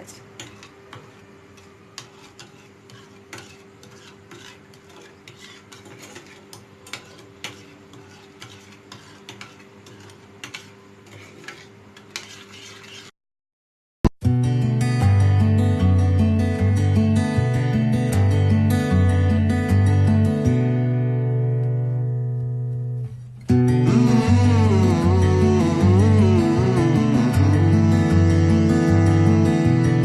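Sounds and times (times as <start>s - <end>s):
guitar music: 14.2s - 30.0s.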